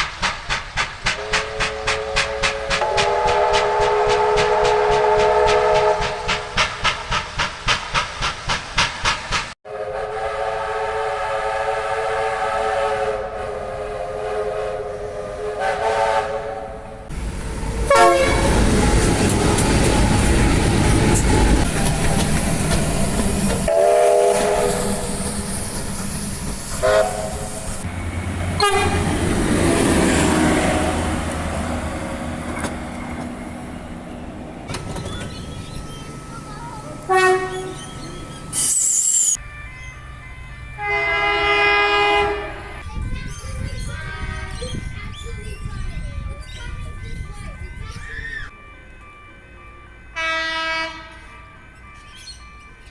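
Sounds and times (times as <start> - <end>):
train rumble and wheel clatter: 0.0 - 10.2, 10.8 - 52.9
train horn blasts: 1.2 - 6.6, 9.6 - 17.1, 17.8 - 19.1, 23.6 - 25.4, 26.8 - 27.9, 28.5 - 32.7, 37.0 - 37.8, 39.4 - 42.9, 43.9 - 44.8, 48.5 - 51.8.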